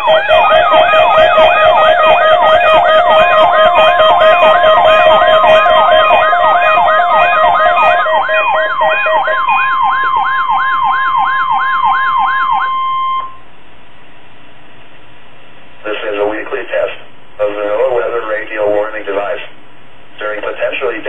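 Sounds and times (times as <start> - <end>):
rising and falling siren: 0.0 - 13.4
beeping tone: 0.0 - 13.5
warning alarm tone: 0.0 - 13.5
radio hiss: 15.8 - 19.6.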